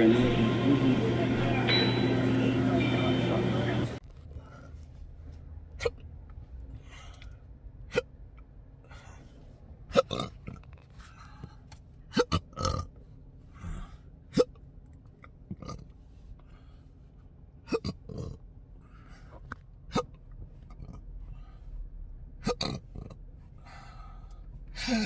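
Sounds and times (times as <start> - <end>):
man hiccuping: 5.8 - 6.0, 9.9 - 10.5, 12.1 - 12.9, 17.6 - 18.4, 19.9 - 20.2, 22.4 - 23.2
man breathing: 6.7 - 7.6, 8.8 - 9.7, 10.9 - 11.9, 13.4 - 14.2, 16.0 - 17.3, 18.8 - 19.6, 21.2 - 22.0, 23.4 - 25.0.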